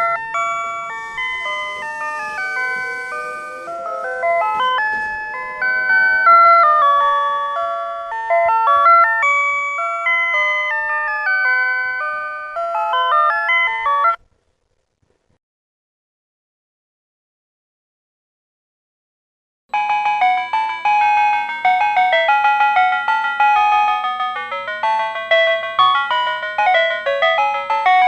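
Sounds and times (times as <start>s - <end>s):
electronic melody of stepped tones: 0.0s - 14.2s, 19.7s - 28.0s.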